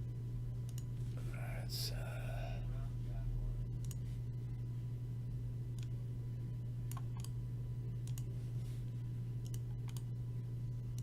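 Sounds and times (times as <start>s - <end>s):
low hum: 0.0s - 11.0s
computer mouse clicks: 0.6s - 0.9s, 3.8s - 4.0s, 6.9s - 7.4s, 8.0s - 8.3s, 9.4s - 10.1s.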